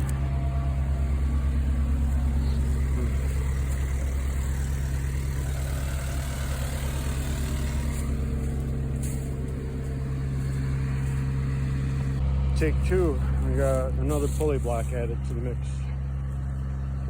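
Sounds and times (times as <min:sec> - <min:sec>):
heavy vehicle engine humming: 0:00.0 - 0:17.0.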